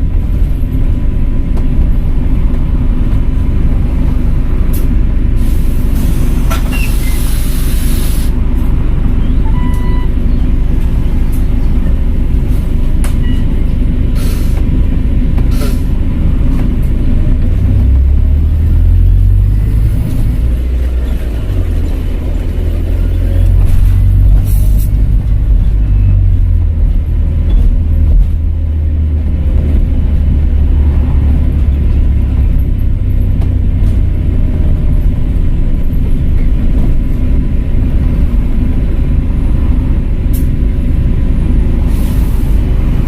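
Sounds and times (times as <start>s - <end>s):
bus engine rumbling: 0.0s - 43.0s
air hiss: 5.4s - 8.4s.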